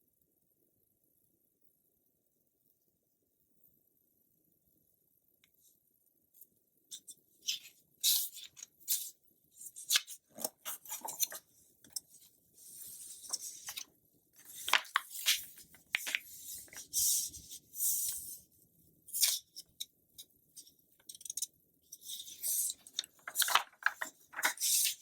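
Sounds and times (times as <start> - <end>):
magazine pages rustling: 9.8 - 12.0, 12.6 - 17.4, 22.3 - 25.0
paper sliding swishes: 14.4 - 18.3.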